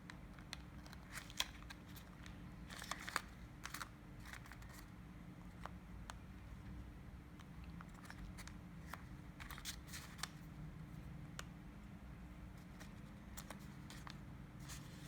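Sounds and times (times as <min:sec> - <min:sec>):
paper crinkling: 0:00.5 - 0:04.9, 0:12.6 - 0:15.0.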